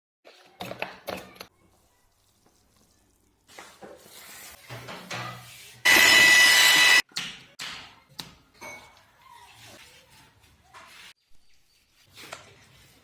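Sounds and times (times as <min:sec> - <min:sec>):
loud power tool running: 0:05.9 - 0:07.0
rubbing and scraping: 0:09.4 - 0:13.0.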